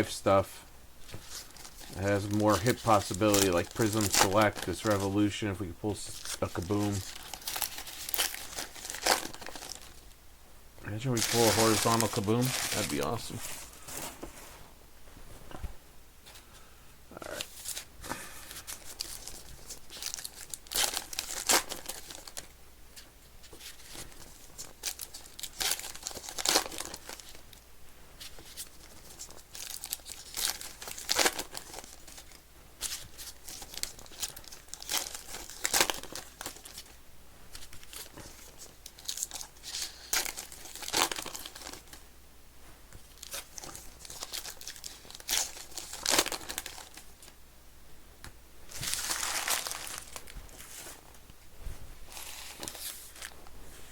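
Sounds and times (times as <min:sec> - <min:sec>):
card wrappers crinkling and ripping: 0:00.0 - 0:10.0, 0:10.9 - 0:13.8, 0:17.3 - 0:22.5, 0:23.4 - 0:27.6, 0:28.2 - 0:42.0, 0:43.0 - 0:47.3, 0:48.7 - 0:51.0, 0:52.1 - 0:53.4
handling cards: 0:00.0 - 0:10.0, 0:10.9 - 0:14.4, 0:48.7 - 0:51.1, 0:52.0 - 0:53.9.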